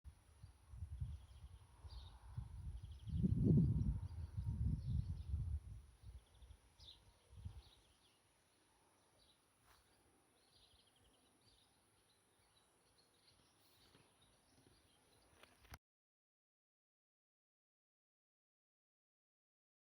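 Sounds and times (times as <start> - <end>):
faint birdsong chirps and trills: 0.1 - 15.8.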